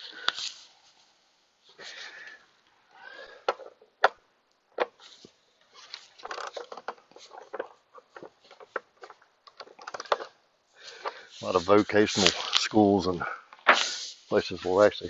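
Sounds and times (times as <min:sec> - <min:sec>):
light clicking and rustling: 0:03.2 - 0:12.9.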